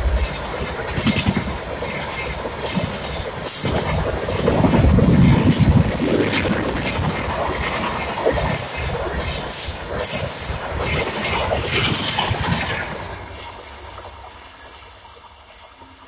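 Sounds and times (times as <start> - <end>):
train running past: 0.0 - 16.0.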